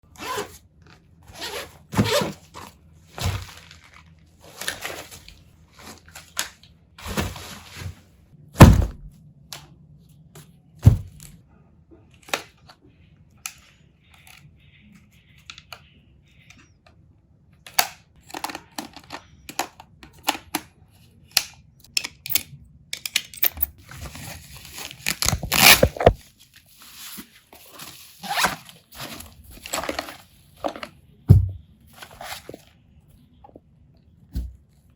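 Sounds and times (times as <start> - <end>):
thuds and knocks: 8.6 - 9.1, 31.3 - 31.6
tearing or scraping noises: 23.8 - 30.2.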